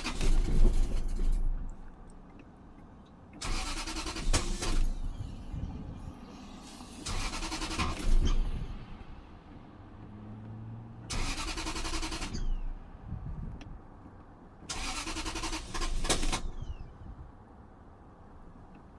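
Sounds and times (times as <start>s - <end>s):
car engine cranking: 0.0s - 2.4s, 3.2s - 5.5s, 6.3s - 12.9s, 14.6s - 16.8s.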